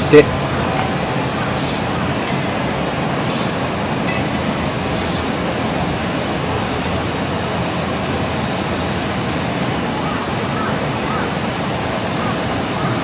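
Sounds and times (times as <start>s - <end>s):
wood fire hissing: 0.0s - 9.5s.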